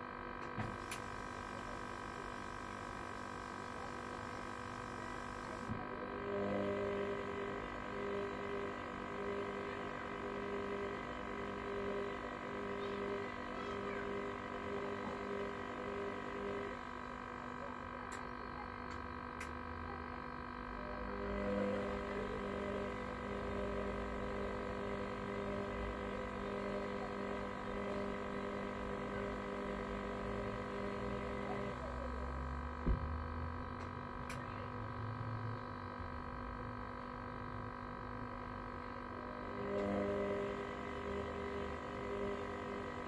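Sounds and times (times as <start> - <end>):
washer-dryer motor whine: 0.0 - 43.0
knock: 32.8 - 33.1.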